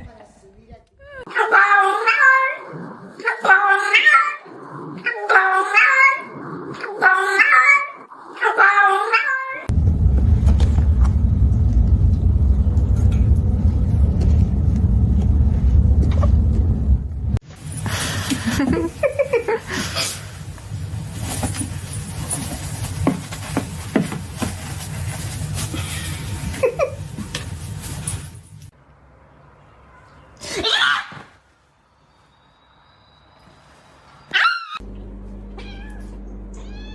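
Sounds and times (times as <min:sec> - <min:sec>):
cat meowing: 0:01.3 - 0:09.7, 0:35.6 - 0:36.9
loud low rumble: 0:09.7 - 0:19.0.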